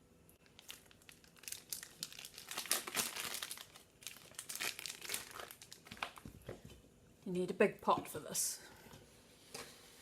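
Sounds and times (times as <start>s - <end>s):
plastic wrapping crinkling: 0.4s - 6.6s.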